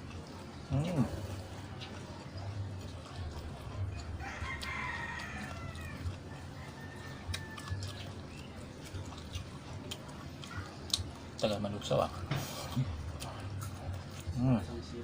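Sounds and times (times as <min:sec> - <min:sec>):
rooster crowing: 0:04.2 - 0:08.0.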